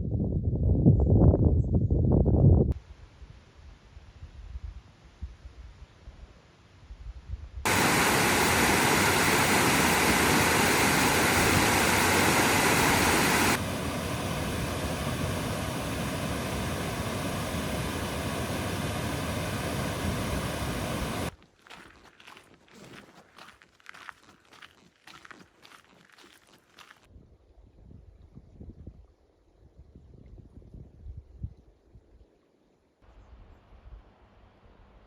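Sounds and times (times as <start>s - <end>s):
rushing water: 7.7s - 21.3s
footsteps: 21.3s - 27.1s.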